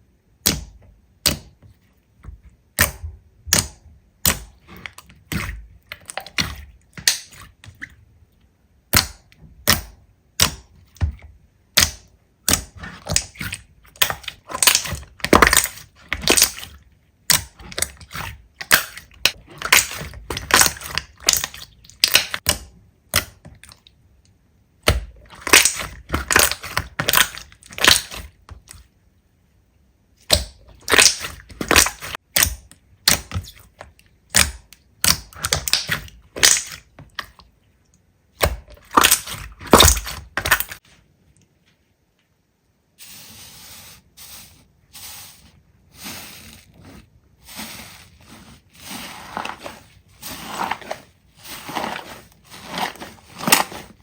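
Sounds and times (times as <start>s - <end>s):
slime popping and crackling: 11.8s - 16.7s, 17.3s - 23.4s, 24.8s - 28.3s, 30.2s - 37.3s, 38.4s - 40.8s.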